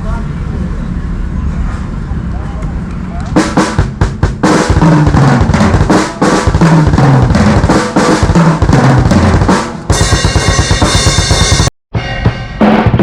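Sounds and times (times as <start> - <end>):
drum kit fills: 3.3 - 13.0
ringing cymbal crash: 9.9 - 13.0.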